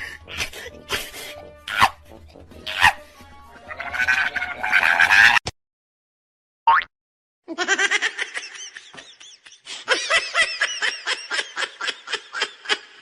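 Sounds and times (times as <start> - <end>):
high-pitched laughter: 3.7 - 5.4, 7.5 - 13.0.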